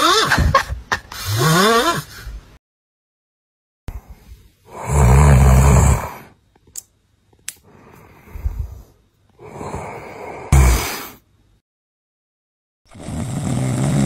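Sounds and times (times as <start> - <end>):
person snoring: 4.7 - 6.4, 9.4 - 11.2, 12.9 - 14.0.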